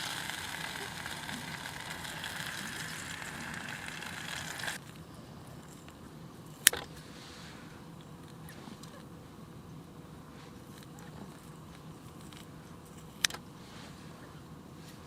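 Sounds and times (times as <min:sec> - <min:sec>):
food sizzling in a frying pan: 0:00.0 - 0:04.8.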